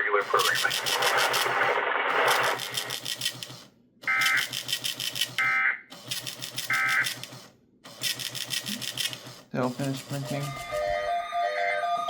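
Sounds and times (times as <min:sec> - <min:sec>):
buzzy digital data tones: 0:00.3 - 0:02.9.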